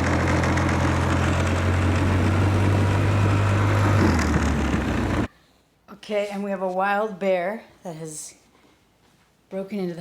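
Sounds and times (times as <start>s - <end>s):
vehicle engine running: 0.0s - 5.3s.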